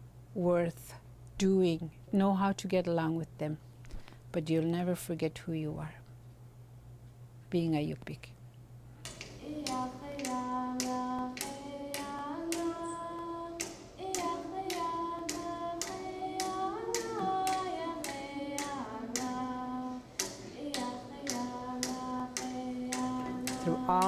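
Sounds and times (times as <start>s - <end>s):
voices singing sliding notes: 9.1s - 24.0s.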